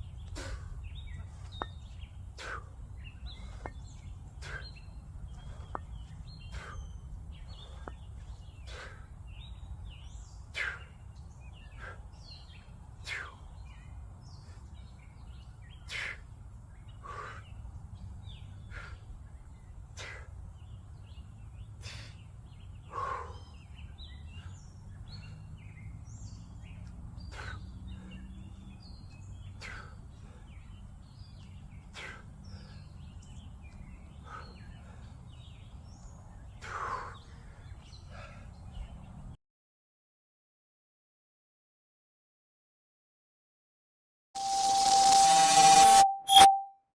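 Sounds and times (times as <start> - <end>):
songbirds chirping: 0.0 - 39.4
short sharp sounds: 44.4 - 46.7.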